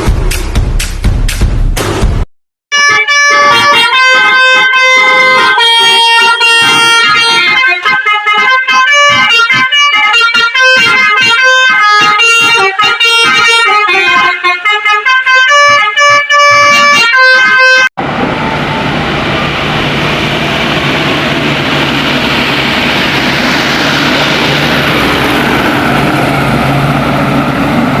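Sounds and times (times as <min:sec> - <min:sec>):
horn playing a stepped melody: 0:02.7 - 0:17.9
road and tyre noise: 0:02.9 - 0:28.0
vehicle engine humming: 0:18.0 - 0:28.0.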